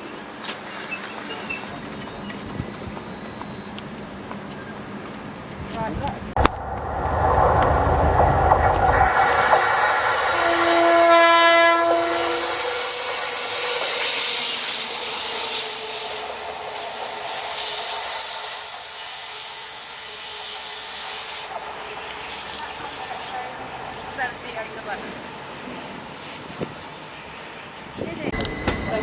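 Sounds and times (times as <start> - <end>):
train wheels rolling on rails: 0.0 - 29.0
train horn: 10.1 - 16.4
faint high whine: 28.4 - 29.0.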